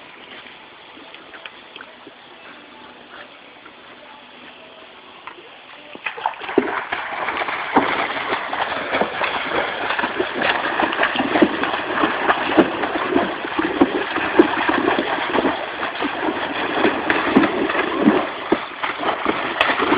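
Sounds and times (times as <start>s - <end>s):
horses splashing in water: 5.9s - 19.9s.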